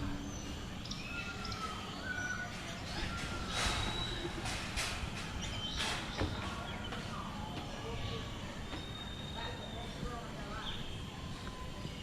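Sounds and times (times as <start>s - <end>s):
birds whistling: 0.2s - 4.4s, 8.8s - 10.0s.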